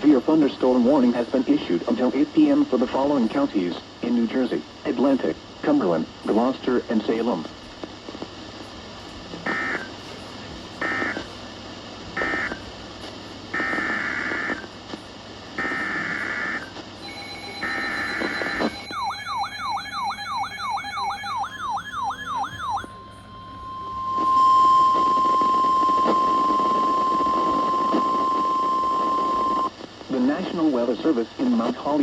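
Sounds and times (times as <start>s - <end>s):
radio hiss: 0.0s - 32.0s
buzzy digital data tones: 9.4s - 10.0s, 10.8s - 11.4s, 12.2s - 12.7s, 13.5s - 14.8s, 15.6s - 30.4s
steady attention tone: 15.6s - 29.7s
warbling tone: 17.1s - 29.7s.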